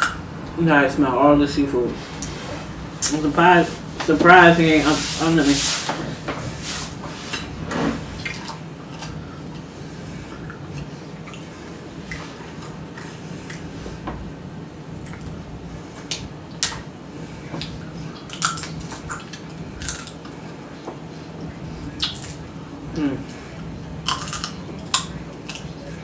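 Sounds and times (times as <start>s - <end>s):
crab shells cracking: 24.1s - 25.7s.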